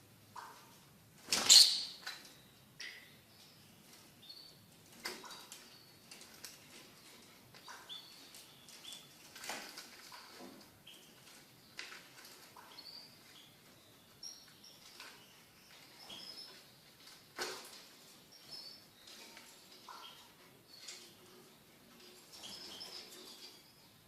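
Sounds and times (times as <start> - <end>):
lovebirds calling: 0.3 - 24.0
high bird chirps: 1.4 - 2.1.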